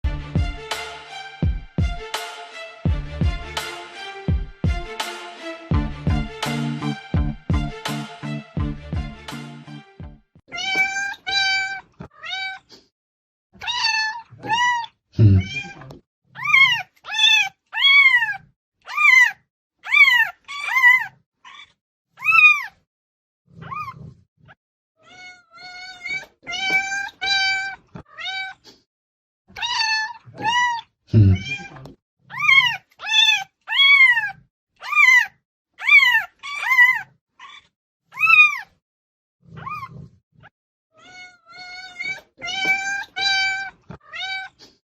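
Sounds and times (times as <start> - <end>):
cat meowing loudly: 10.5 - 12.7, 13.6 - 15.8, 16.4 - 22.7, 25.0 - 28.6, 29.6 - 38.7, 41.0 - 44.6.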